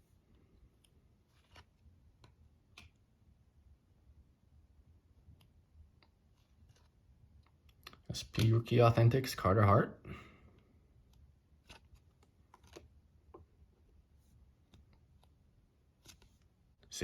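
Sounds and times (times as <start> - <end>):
cards rustling: 0.7 - 3.0, 6.3 - 8.6, 11.5 - 13.4, 14.3 - 16.6.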